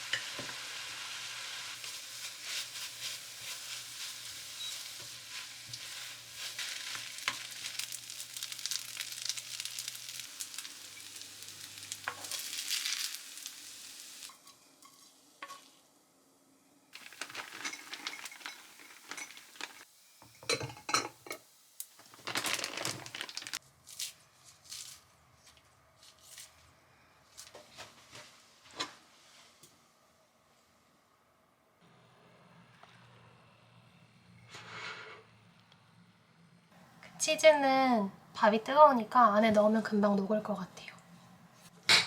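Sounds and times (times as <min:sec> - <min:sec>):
spatula scraping a pan: 0:00.0 - 0:13.1
fried rice sizzling in a pan: 0:00.0 - 0:15.9, 0:17.0 - 0:23.6.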